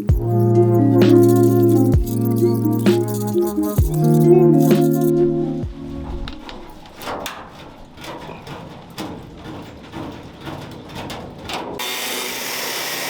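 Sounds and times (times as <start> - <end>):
metal tools knocking and scraping: 6.3 - 11.8.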